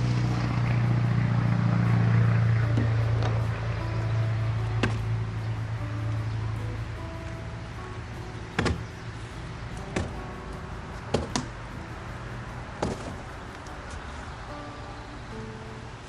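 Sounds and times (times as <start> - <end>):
background music: 0.0 - 16.0
sharp knocks: 4.8 - 5.1, 8.6 - 9.0, 9.8 - 10.2, 11.0 - 11.6, 12.8 - 13.4.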